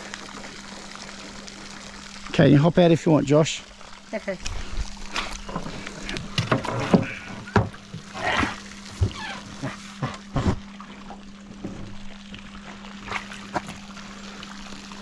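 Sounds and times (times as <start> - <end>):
water splashing around canoe: 4.5 - 14.4.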